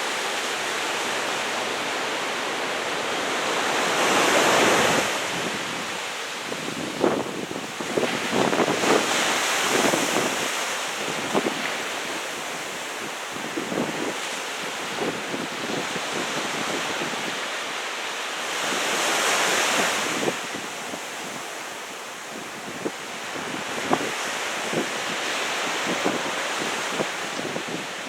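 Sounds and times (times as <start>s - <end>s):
wind buffeting microphone: 4.8s - 11.6s.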